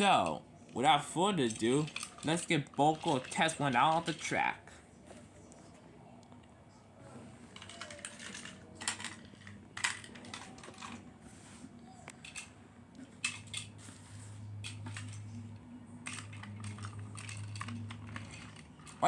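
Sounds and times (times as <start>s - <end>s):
plastic toy train clicks: 0.0s - 4.5s, 7.6s - 11.0s, 12.1s - 12.5s, 13.2s - 13.8s, 14.6s - 19.0s.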